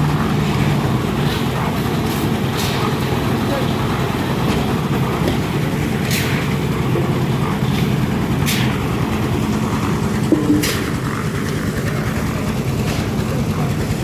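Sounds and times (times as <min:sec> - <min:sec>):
concrete mixer engine drone: 0:00.0 - 0:14.0.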